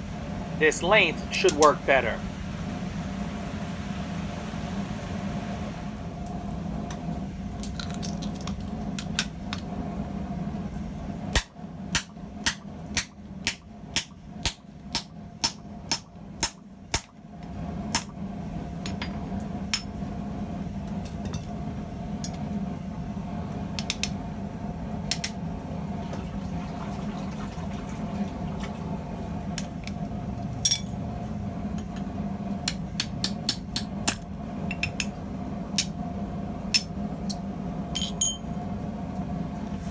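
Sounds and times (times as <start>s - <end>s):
steady background hum: 0.0s - 39.9s
hammer striking steel rivet: 11.4s - 17.2s, 38.0s - 38.4s.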